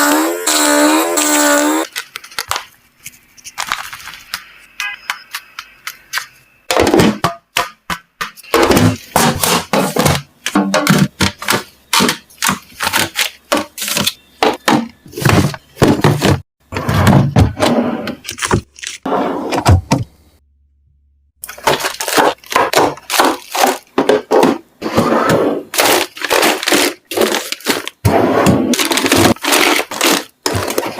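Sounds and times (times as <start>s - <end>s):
food packaging clacks and thunks: 6.7s - 20.1s, 21.4s - 30.9s.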